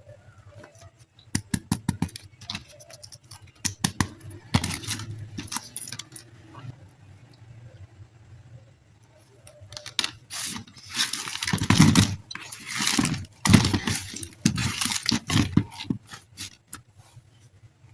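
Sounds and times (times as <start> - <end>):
plastic packaging crinkling: 2.2 - 6.4, 9.5 - 16.8.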